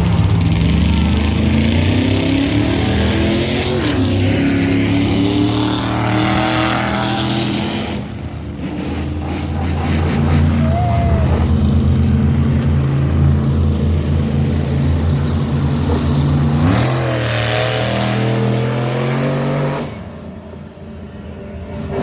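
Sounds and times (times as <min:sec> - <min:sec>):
loud vehicle engine running: 0:00.0 - 0:19.8.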